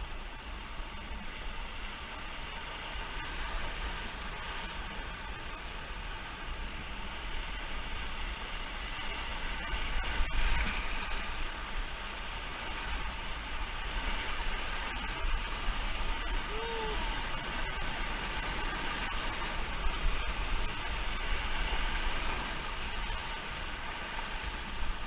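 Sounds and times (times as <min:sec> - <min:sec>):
wind rumble on microphone: 0:00.0 - 0:25.0
river whitewater rushing: 0:08.3 - 0:25.0.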